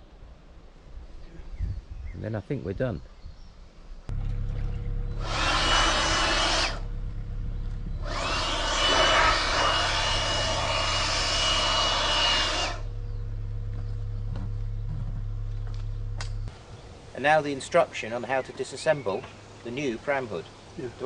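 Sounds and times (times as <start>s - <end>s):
steady low hum: 3.8s - 17.1s
small power tool whining: 5.1s - 6.9s, 7.5s - 13.2s.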